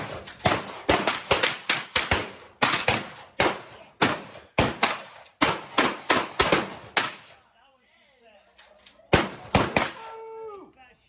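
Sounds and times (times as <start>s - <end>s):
rapid shotgun fire: 0.0s - 7.4s, 9.1s - 10.1s.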